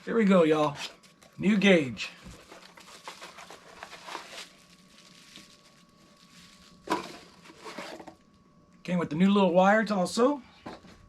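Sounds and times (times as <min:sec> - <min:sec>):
packaging rustling and crinkling: 0:02.2 - 0:08.2.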